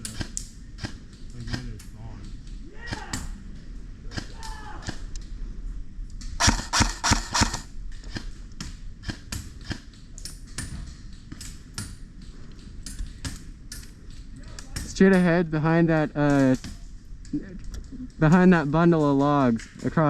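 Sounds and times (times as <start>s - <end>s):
airsoft rifle shots: 6.4s - 7.7s.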